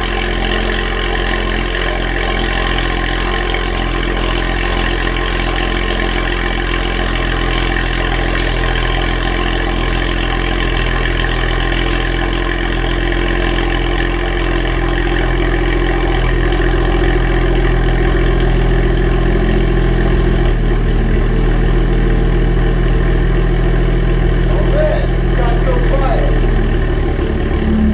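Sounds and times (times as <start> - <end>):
car engine idling: 0.0 - 27.9.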